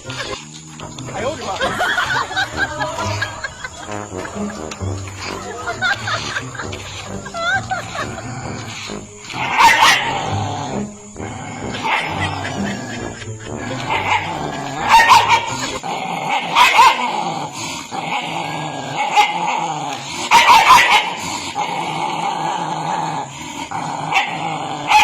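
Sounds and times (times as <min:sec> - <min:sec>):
dog growling: 0:00.0 - 0:25.0
dog barking: 0:08.9 - 0:10.3, 0:11.8 - 0:12.4, 0:13.9 - 0:15.7, 0:16.5 - 0:17.1, 0:19.1 - 0:19.4, 0:20.3 - 0:21.2, 0:24.1 - 0:25.0.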